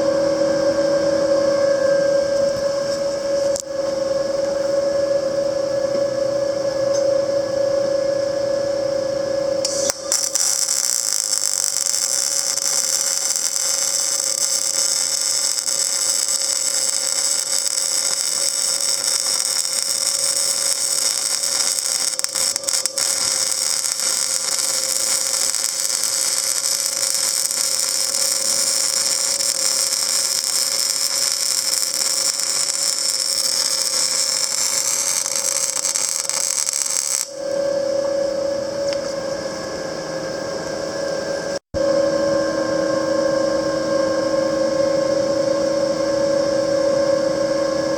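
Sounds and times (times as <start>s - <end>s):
welder machine hum: 9.4s - 37.6s
welding arc hiss: 9.6s - 37.4s.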